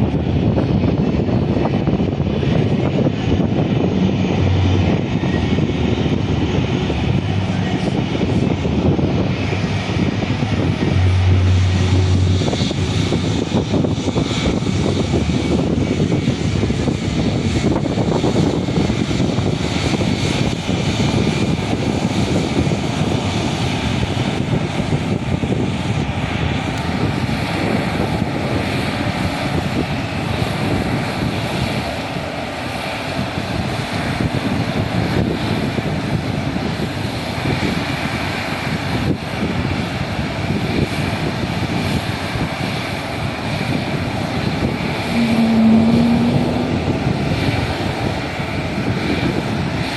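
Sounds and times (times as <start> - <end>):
jet engines roaring: 0.0 - 49.9.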